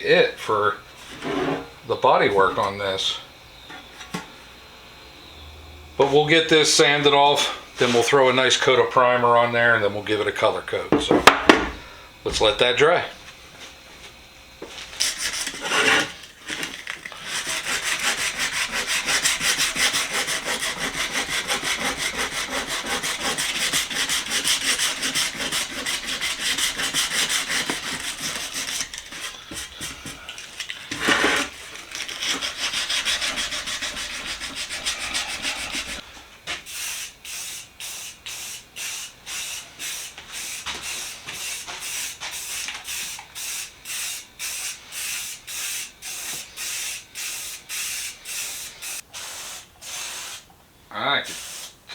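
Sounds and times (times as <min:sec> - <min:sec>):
sanding body filler: 0:15.0 - 0:16.2, 0:17.2 - 0:30.2, 0:31.0 - 0:36.0.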